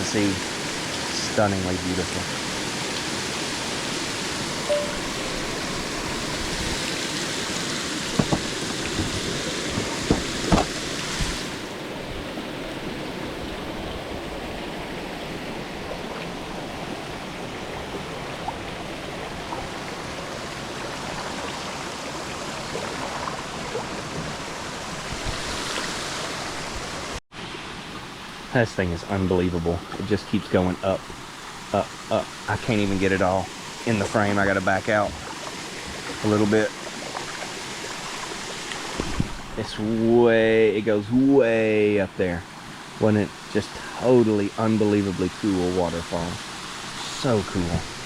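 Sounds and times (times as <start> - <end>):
waterfall rushing: 0.0 - 12.0
light knocks: 8.1 - 11.3.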